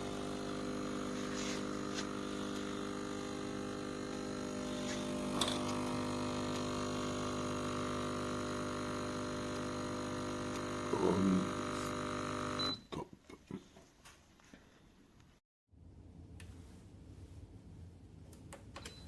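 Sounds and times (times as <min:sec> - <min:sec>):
espresso machine pump buzzing: 0:00.0 - 0:12.7.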